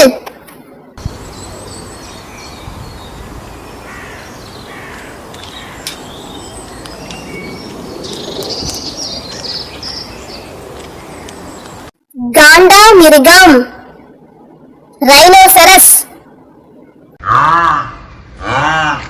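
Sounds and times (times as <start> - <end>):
steady outdoor background: 0.0 - 19.0.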